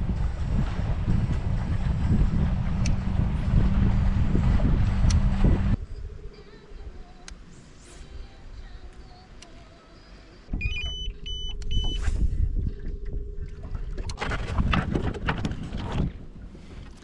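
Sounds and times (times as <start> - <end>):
water rushing: 0.0 - 5.8
boat motor humming: 0.0 - 14.2
wind: 0.0 - 17.0
short electronic beeps: 10.6 - 12.1.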